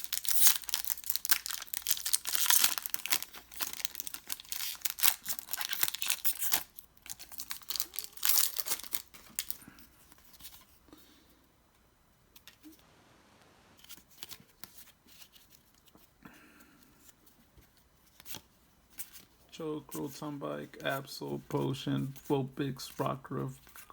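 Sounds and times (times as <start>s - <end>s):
foil wrapper tearing and crinkling: 0.0s - 9.7s.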